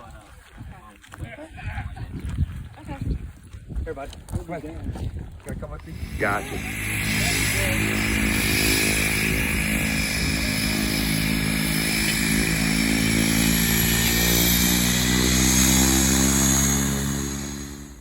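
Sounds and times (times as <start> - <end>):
high whine rising in pitch: 5.8 - 18.0
plane engine and propeller: 5.8 - 18.0.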